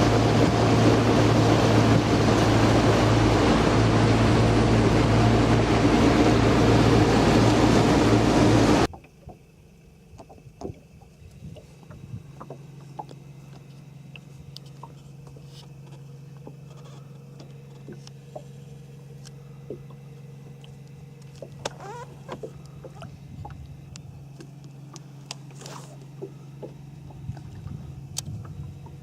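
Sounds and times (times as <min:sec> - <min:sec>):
boat motor humming: 0:00.0 - 0:29.0
short wavering squeak: 0:21.7 - 0:22.4.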